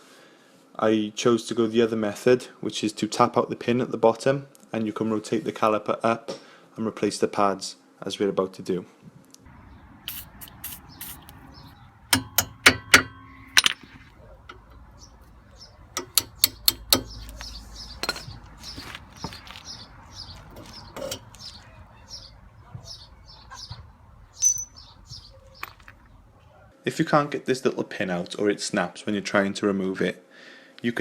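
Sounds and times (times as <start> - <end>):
hammer knocking on metal: 12.1 - 13.9, 16.0 - 18.9.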